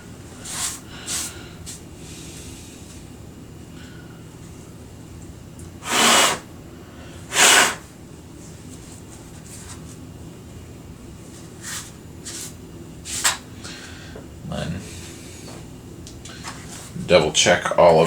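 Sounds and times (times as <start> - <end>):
loud hissing bursts: 5.8 - 6.5, 7.3 - 7.9.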